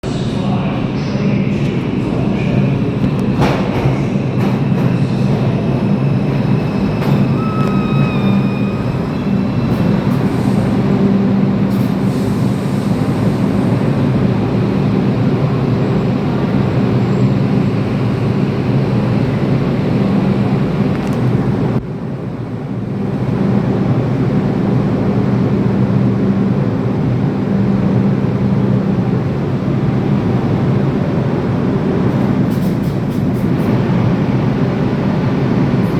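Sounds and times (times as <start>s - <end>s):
subway train rumbling on rails: 0.0s - 35.9s
high-pitched wheel squeals: 5.8s - 10.5s.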